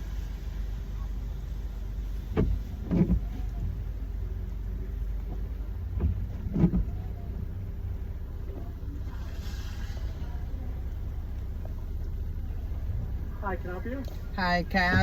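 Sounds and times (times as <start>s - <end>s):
car idling: 0.0s - 15.0s
short thumps: 14.7s - 15.0s.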